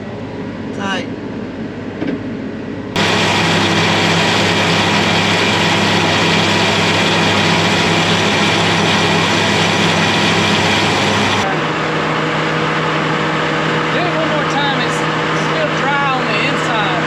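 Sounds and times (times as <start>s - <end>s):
pump and engine hum: 3.0s - 16.2s.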